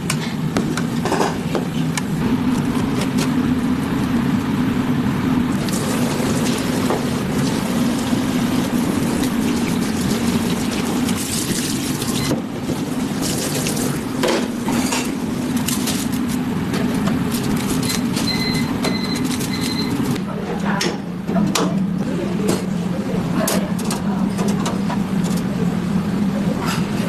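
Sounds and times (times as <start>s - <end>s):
steady kitchen hum: 0.0s - 27.0s
running water: 5.5s - 14.2s.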